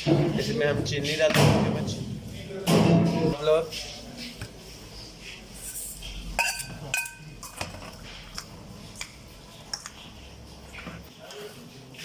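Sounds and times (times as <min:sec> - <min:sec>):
spoon clinking against bowl: 0:06.3 - 0:07.7.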